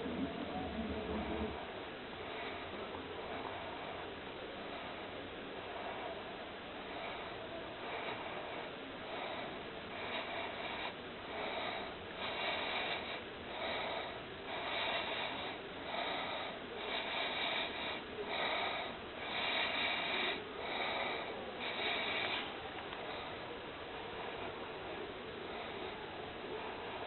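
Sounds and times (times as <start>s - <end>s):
snoring: 0.0s - 1.7s, 6.9s - 22.5s.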